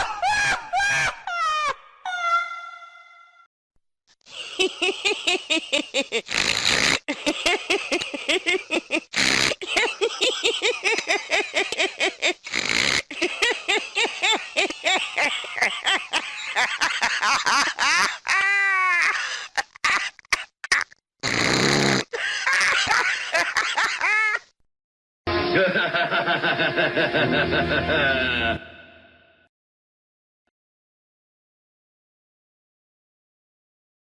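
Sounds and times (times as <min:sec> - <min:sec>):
man laughing hard: 0:00.0 - 0:02.7, 0:04.3 - 0:20.9, 0:22.1 - 0:24.5, 0:25.4 - 0:28.9
sharp gasping breaths: 0:19.1 - 0:20.3.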